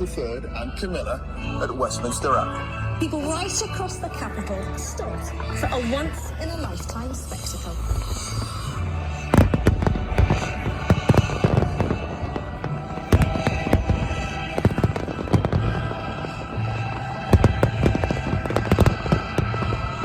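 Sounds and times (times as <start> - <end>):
music: 0.0 - 20.0
fireworks bangs: 8.4 - 20.0.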